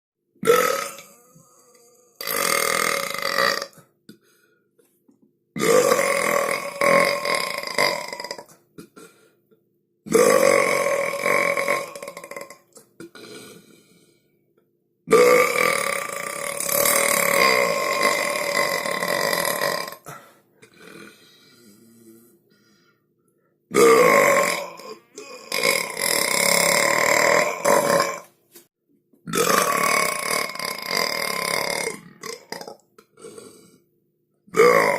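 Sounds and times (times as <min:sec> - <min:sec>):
loud belches: 0:00.4 - 0:03.8, 0:05.6 - 0:09.1, 0:10.1 - 0:13.6, 0:15.1 - 0:21.2, 0:23.7 - 0:28.3, 0:29.3 - 0:33.8, 0:34.5 - 0:34.9.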